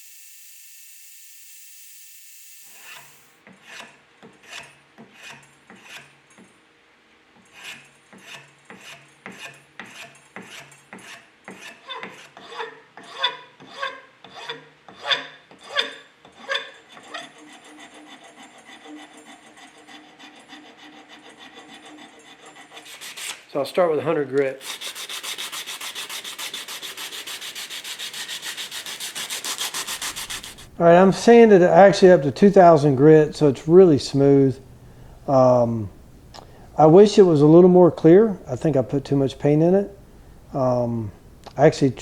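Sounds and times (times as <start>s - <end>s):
high whir: 0.0s - 3.3s
hand file rasping on plastic: 2.8s - 6.2s, 7.5s - 23.5s, 24.6s - 30.7s.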